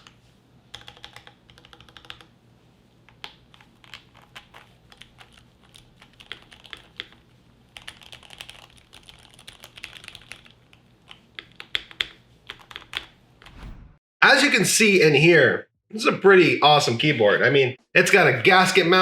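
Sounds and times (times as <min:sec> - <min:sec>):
mechanical keyboard typing: 0:00.7 - 0:02.3, 0:03.5 - 0:07.2, 0:07.8 - 0:13.1.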